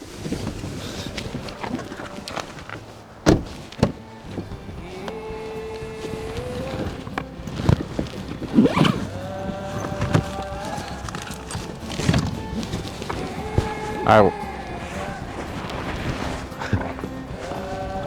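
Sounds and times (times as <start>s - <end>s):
instrumental pop-folk music: 0.0s - 18.0s
sharp knocks: 3.2s - 4.1s.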